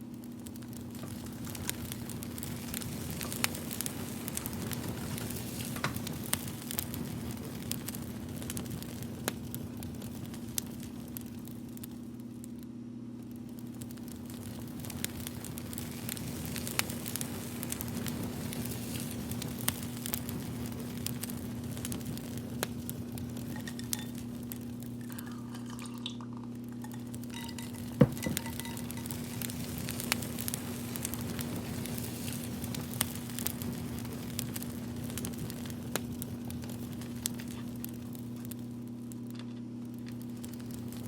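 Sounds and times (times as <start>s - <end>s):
fire crackling and popping: 0.0s - 41.0s
low hum: 23.0s - 31.6s.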